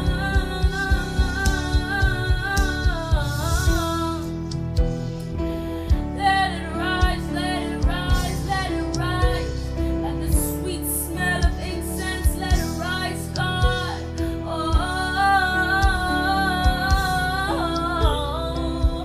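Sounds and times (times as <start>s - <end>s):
woman singing worship song: 0.0s - 4.9s, 5.8s - 19.0s
steady low beat: 0.0s - 6.3s, 7.0s - 10.6s, 14.7s - 19.0s.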